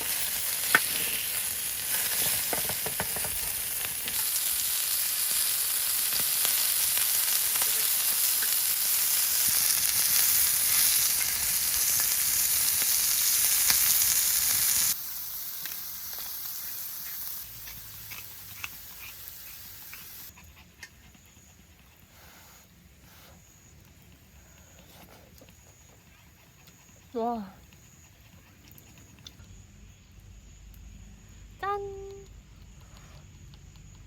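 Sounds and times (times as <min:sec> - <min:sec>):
pork sizzling in a cauldron: 0:00.0 - 0:26.0.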